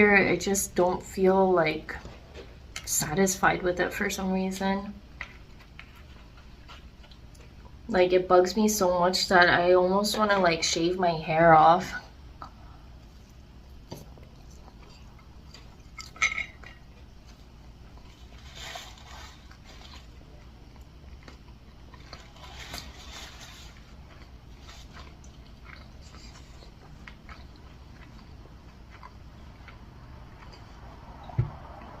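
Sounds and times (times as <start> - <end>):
soft chewing: 5.2 - 7.9, 12.0 - 32.0.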